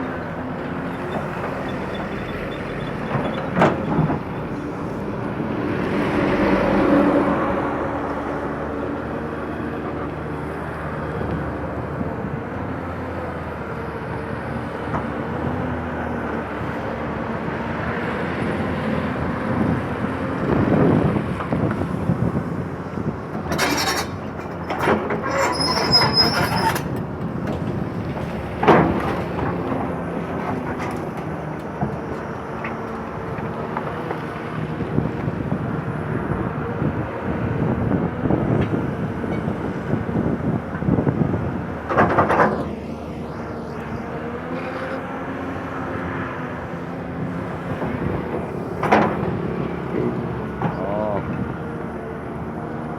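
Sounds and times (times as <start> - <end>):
diesel engine running: 0.0 - 52.9
high-pitched metallic squeal: 0.9 - 4.7, 25.2 - 26.9.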